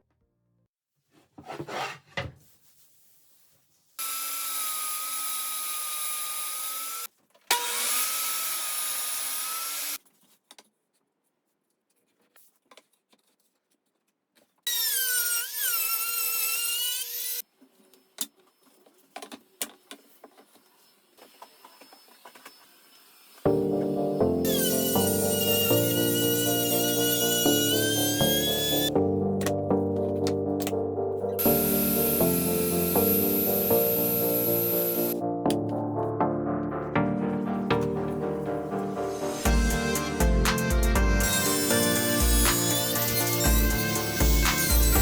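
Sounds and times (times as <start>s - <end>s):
power tool cutting wood: 4.0s - 10.0s, 14.7s - 17.4s, 20.9s - 29.0s, 31.4s - 35.2s, 39.4s - 45.0s.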